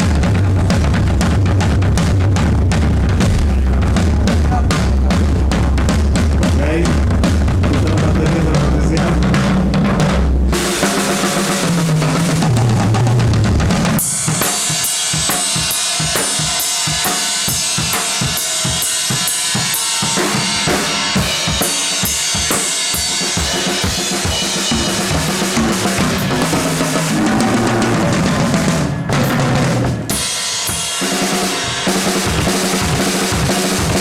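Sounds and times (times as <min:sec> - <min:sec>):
low bass notes: 0:00.0 - 0:14.4, 0:23.5 - 0:30.4
drum kit beat: 0:00.0 - 0:34.0
cymbal wash: 0:13.9 - 0:27.2.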